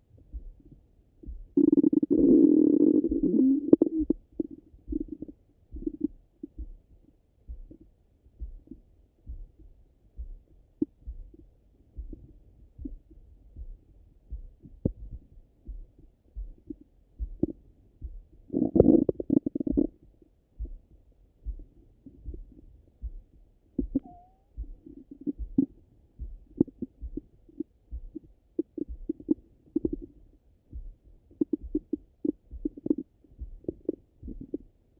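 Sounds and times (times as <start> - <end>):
low pulse beating: 0.1 - 34.9
stomach gurgles: 1.6 - 6.1, 18.5 - 20.0, 23.8 - 25.8, 31.4 - 34.6
rumbling gurgle: 18.5 - 19.9.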